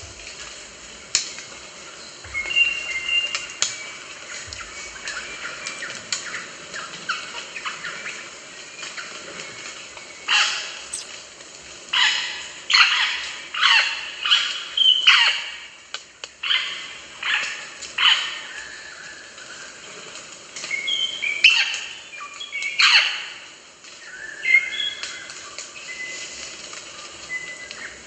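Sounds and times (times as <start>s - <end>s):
short whistled bird notes: 10.9s - 11.1s.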